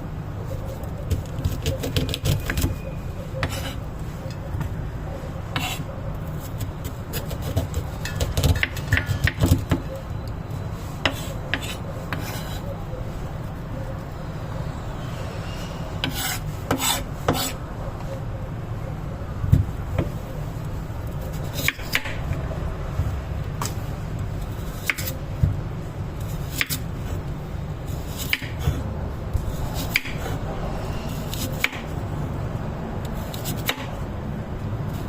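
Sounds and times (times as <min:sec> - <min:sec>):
rasping scraping strokes: 0:05.5 - 0:05.9, 0:15.4 - 0:17.6.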